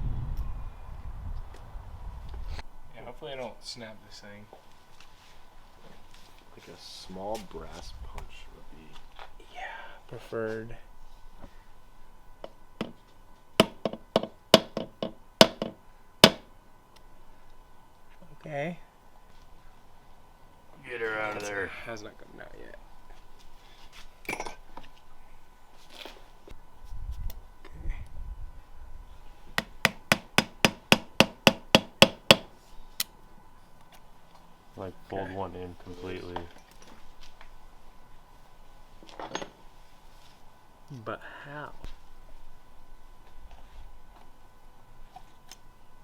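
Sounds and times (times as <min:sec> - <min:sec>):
hammer tapping steel punch: 0:13.6 - 0:16.5, 0:29.6 - 0:32.5.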